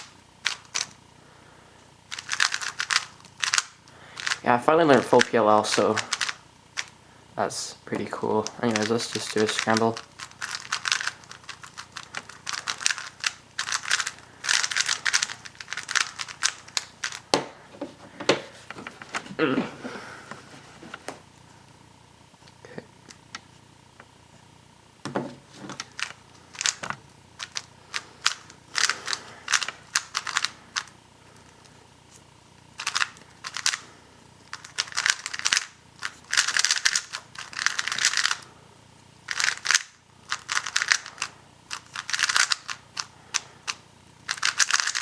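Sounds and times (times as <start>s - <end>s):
puzzle cube plastic clicks: 0.0s - 1.0s, 2.1s - 4.4s, 5.0s - 6.9s, 8.4s - 17.2s, 25.7s - 30.9s, 32.8s - 33.8s, 34.5s - 38.4s, 39.3s - 45.0s.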